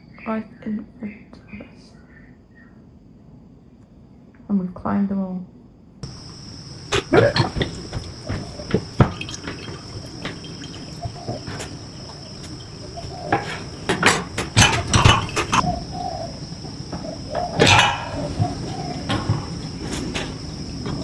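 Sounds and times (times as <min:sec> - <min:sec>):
crickets chirring: 0:00.0 - 0:04.3, 0:06.0 - 0:21.0
knocks and clatter of objects: 0:06.0 - 0:15.7, 0:16.6 - 0:21.0.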